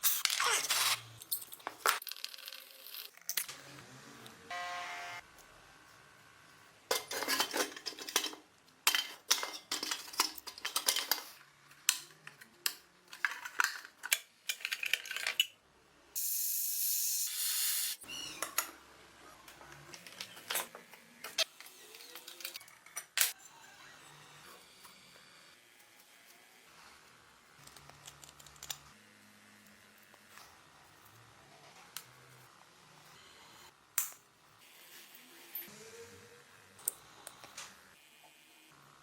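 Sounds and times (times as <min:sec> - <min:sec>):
small metal parts clinking: 0:01.2 - 0:03.5, 0:06.9 - 0:15.6.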